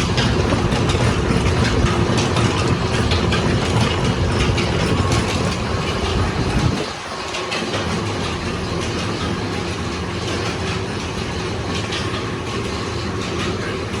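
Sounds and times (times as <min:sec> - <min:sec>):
oil expeller machine hum and clatter: 0:00.0 - 0:14.0.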